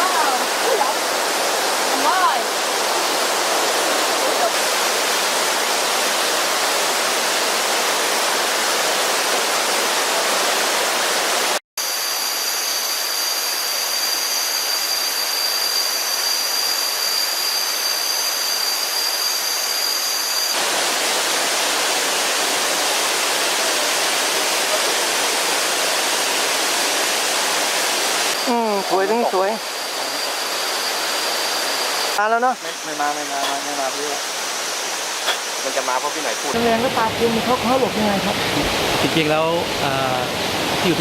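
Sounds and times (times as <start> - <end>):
stream rushing and splashing: 0.0 - 12.5, 20.5 - 41.0
high-pitched whine: 10.4 - 41.0.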